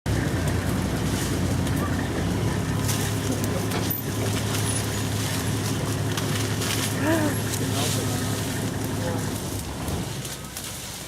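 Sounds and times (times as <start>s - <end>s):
truck engine idling: 0.1s - 11.0s
faint cracks and rustles: 2.8s - 11.0s.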